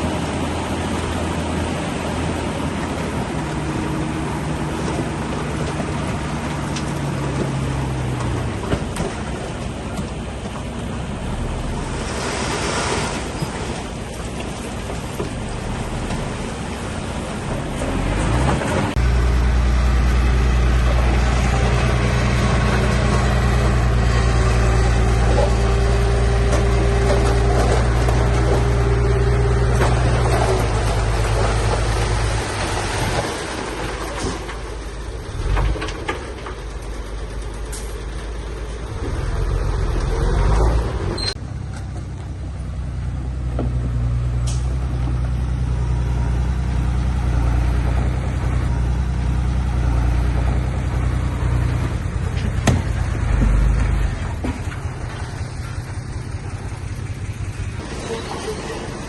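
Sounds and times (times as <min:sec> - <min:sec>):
diesel engine droning: 0:00.0 - 0:59.0.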